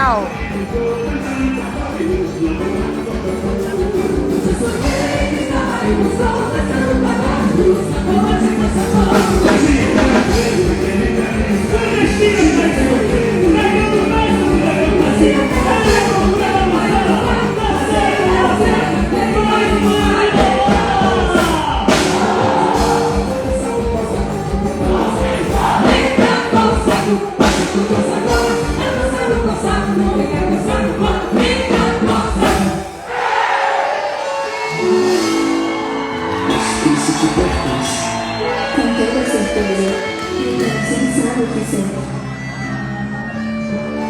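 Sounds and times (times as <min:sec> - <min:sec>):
loud music with steady beat: 0:00.0 - 0:33.1
group singing: 0:00.0 - 0:41.8.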